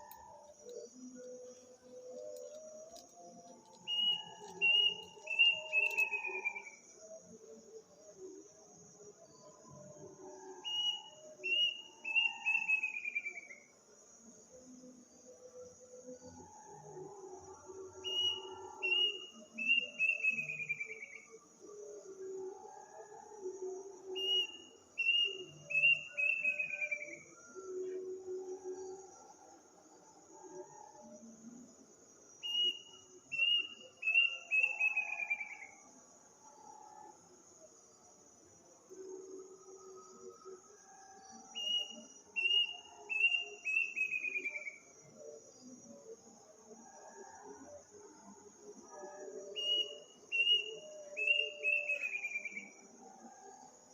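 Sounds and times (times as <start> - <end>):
insect chirring: 0.0 - 8.2, 30.0 - 35.9, 36.6 - 46.5, 49.5 - 53.0
bird whistling: 3.9 - 6.6, 41.6 - 44.7, 49.6 - 52.6.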